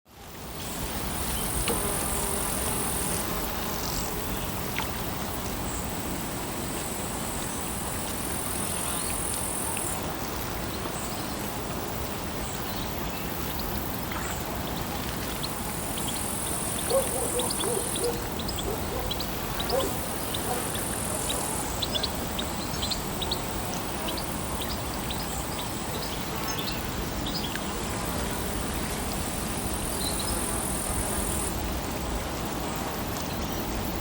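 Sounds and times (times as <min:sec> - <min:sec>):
lake water washing: 0:00.2 - 0:34.0.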